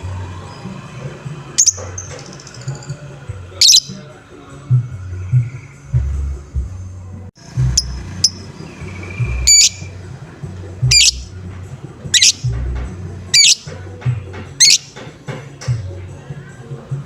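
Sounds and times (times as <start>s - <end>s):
lovebird harsh squawks: 1.6s - 2.6s, 3.6s - 4.0s, 7.8s - 9.9s, 10.9s - 11.3s, 12.1s - 12.5s, 13.3s - 13.7s, 14.6s - 15.0s
steady low hum: 3.1s - 13.4s.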